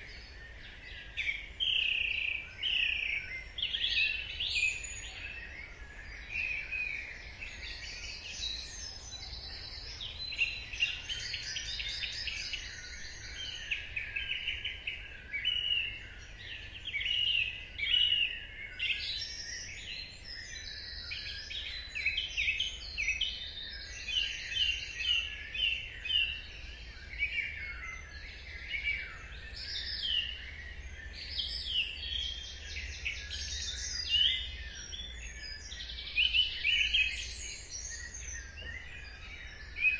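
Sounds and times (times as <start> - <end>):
songbirds singing: 0.0 - 39.9.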